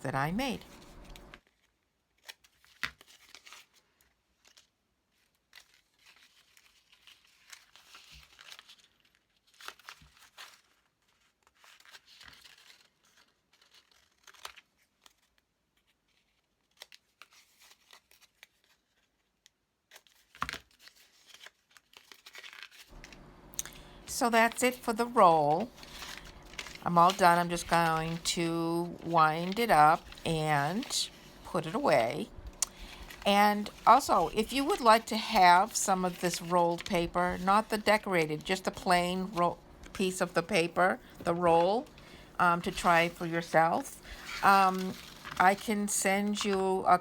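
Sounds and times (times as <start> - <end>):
paper rustling: 0.6 - 46.9
scissors cutting stiff paper: 24.4 - 46.7.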